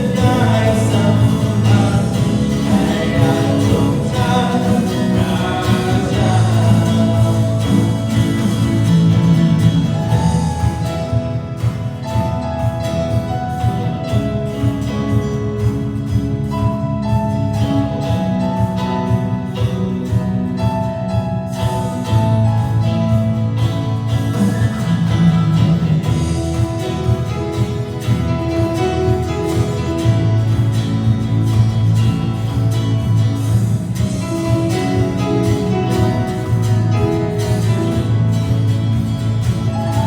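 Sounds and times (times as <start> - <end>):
band playing through sound system: 0.0 - 40.0.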